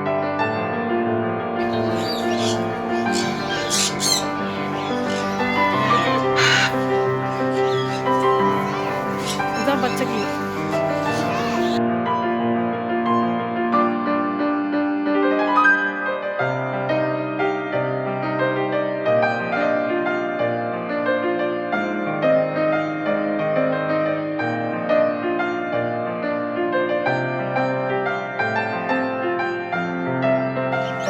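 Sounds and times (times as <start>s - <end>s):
gentle piano music: 1.6s - 21.7s.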